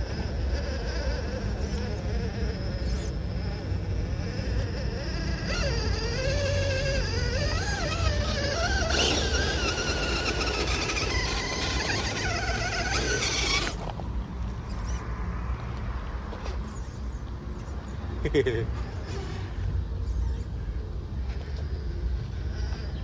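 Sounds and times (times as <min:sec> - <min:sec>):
electric motor whining: 0:00.0 - 0:13.9.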